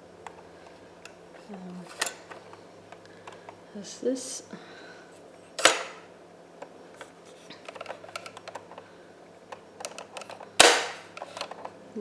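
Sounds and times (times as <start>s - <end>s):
toy sewing machine clicks and knocks: 5.6s - 6.0s.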